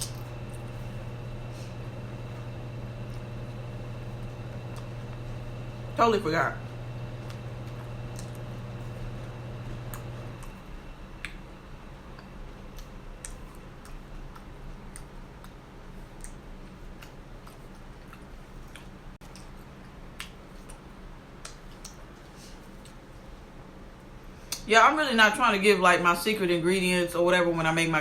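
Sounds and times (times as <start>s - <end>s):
low steady hum: 0.0s - 28.0s
chewing crunchy chips: 12.2s - 23.1s.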